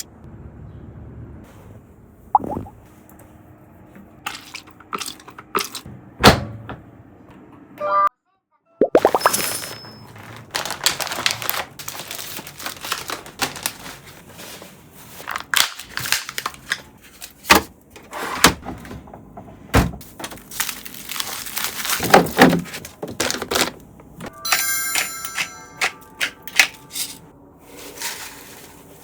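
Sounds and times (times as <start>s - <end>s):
plastic packaging crinkling: 10.0s - 17.5s, 20.1s - 23.7s.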